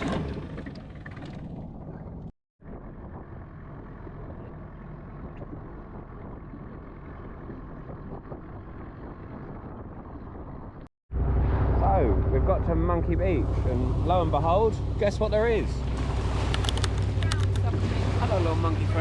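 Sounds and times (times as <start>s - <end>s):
wind noise: 0.0s - 12.4s
boat engine running: 0.0s - 19.0s
water noise: 0.0s - 19.0s.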